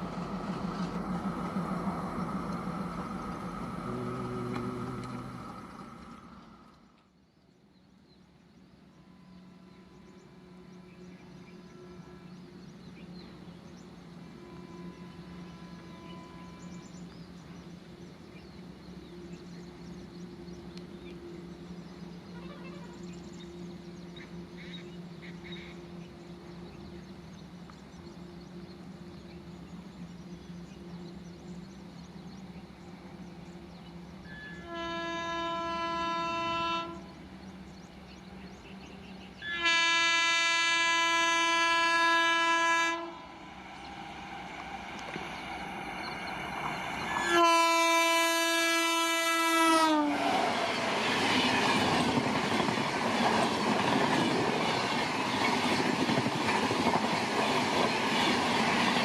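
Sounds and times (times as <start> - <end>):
train wheels rushing on rails: 0.0 - 7.2, 9.4 - 59.0
train horn blasts: 9.0 - 12.6, 14.2 - 17.0, 22.3 - 23.0, 34.3 - 37.2, 39.4 - 43.6, 47.1 - 50.6.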